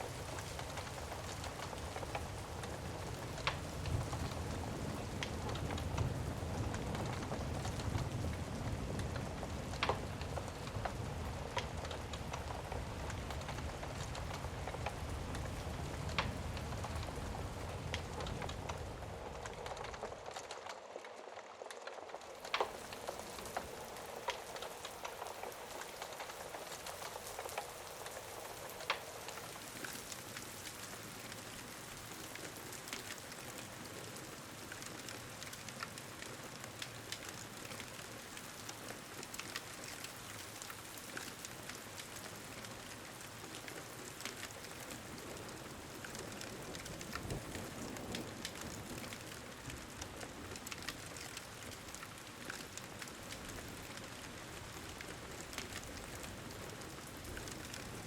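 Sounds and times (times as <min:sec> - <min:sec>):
rain hissing: 0:00.0 - 0:58.0
wood fire crackling: 0:00.0 - 0:58.0
low rumble of thunder: 0:00.1 - 0:20.3, 0:45.0 - 0:52.6.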